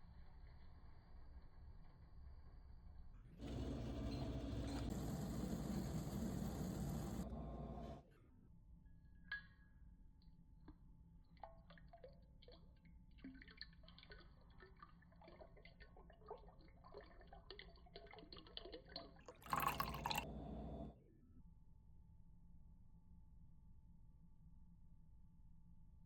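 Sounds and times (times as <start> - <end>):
liquid dripping: 11.3 - 20.3.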